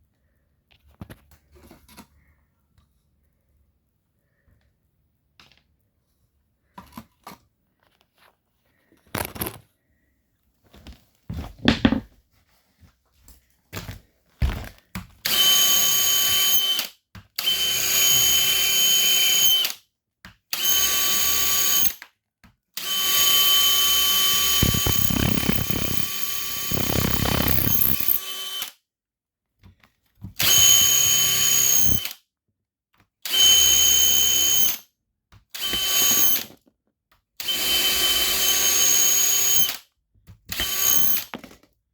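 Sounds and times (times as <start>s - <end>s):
drill bit grinding: 15.3s - 19.7s, 20.6s - 22.0s, 22.8s - 28.7s, 30.4s - 32.1s, 33.3s - 34.8s, 35.6s - 36.5s, 37.4s - 39.8s, 40.5s - 41.3s
electric drill whining: 15.3s - 19.8s, 20.6s - 22.0s, 22.8s - 28.7s, 30.4s - 32.1s, 33.3s - 34.8s, 35.6s - 36.5s, 37.4s - 39.8s, 40.5s - 41.3s
knocks and clicks: 24.6s - 28.2s.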